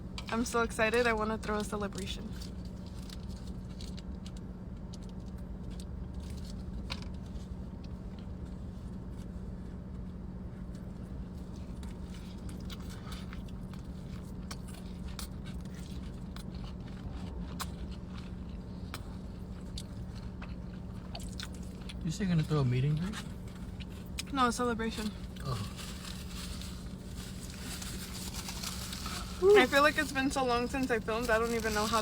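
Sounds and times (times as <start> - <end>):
steady low hum: 0.0 - 32.0
person chewing food: 10.7 - 22.0.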